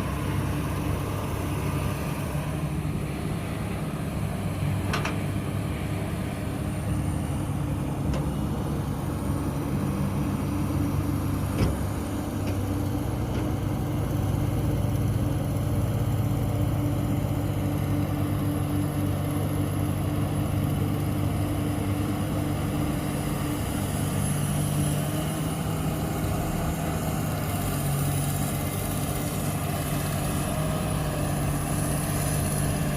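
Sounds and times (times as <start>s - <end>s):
heavy diesel engine running: 0.0s - 32.9s.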